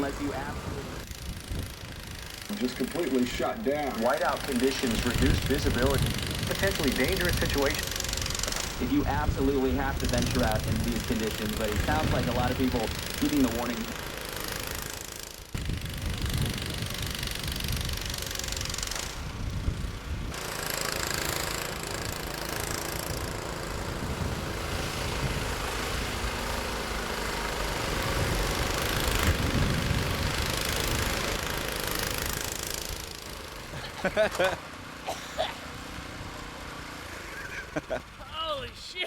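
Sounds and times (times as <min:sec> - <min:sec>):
broad rushing noise: 0:00.0 - 0:14.4
engine running: 0:00.0 - 0:38.6.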